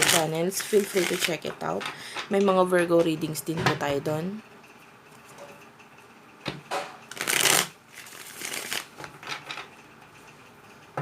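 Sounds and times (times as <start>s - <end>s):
cards being shuffled: 0.0s - 1.4s, 7.1s - 9.1s.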